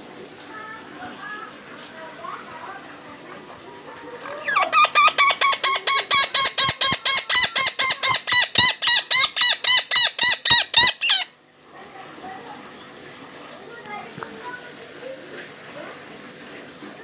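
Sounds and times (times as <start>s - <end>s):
parakeet squawking: 4.2s - 11.3s.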